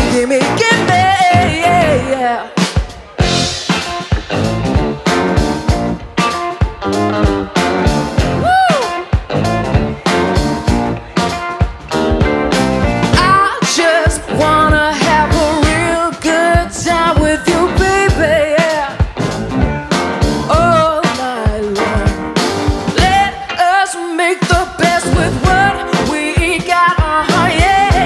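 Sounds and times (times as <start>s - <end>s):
woman singing: 0.0s - 2.8s, 8.4s - 9.0s, 13.2s - 19.2s, 20.5s - 28.0s
live rock band playing: 0.0s - 28.0s.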